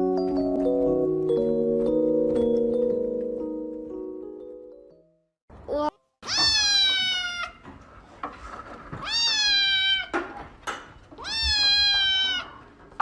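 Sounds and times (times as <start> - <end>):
cat meowing: 6.2 - 7.7, 9.0 - 10.3, 11.2 - 12.7.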